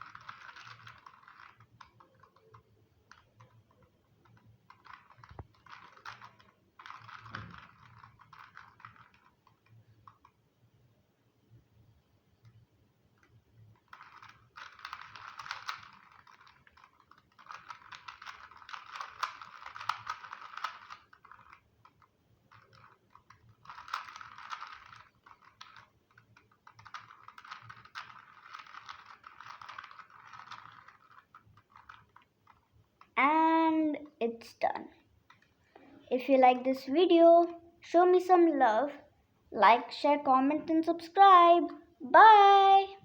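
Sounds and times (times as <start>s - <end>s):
plastic puzzle cube clicking: 0.0s - 10.4s, 13.2s - 33.2s.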